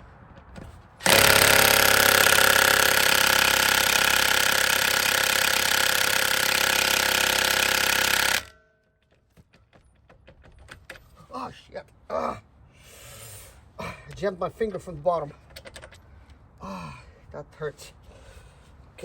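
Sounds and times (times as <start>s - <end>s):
impact wrench hammering: 1.0s - 8.6s.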